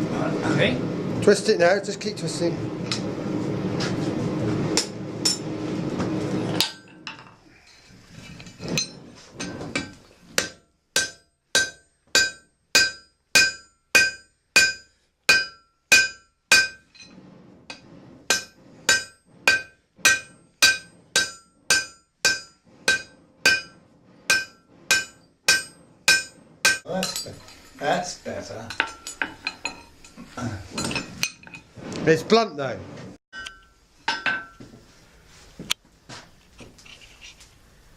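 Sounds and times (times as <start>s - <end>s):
hammer striking iron on anvil: 9.8s - 16.9s, 18.3s - 27.4s, 28.7s - 30.2s, 33.4s - 34.6s.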